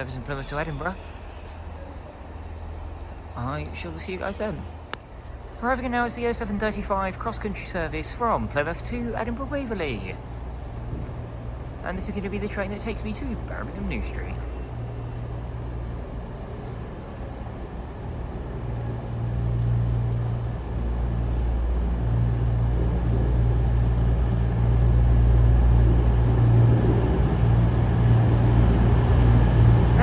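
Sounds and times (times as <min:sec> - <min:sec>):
diesel train engines droning: 0:00.0 - 0:30.0.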